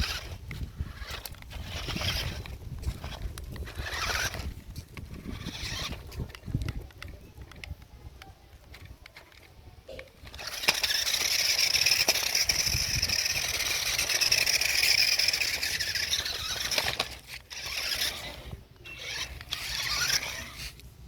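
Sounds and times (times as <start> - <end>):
toy car motor whining: 0.0 - 9.6, 10.2 - 20.9.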